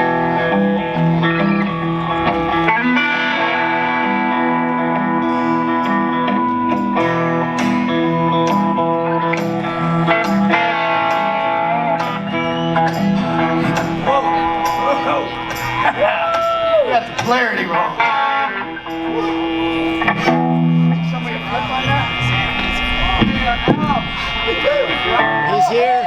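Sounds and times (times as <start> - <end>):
held electric guitar notes: 0.0 - 26.0
repeating low bass line: 17.8 - 25.5.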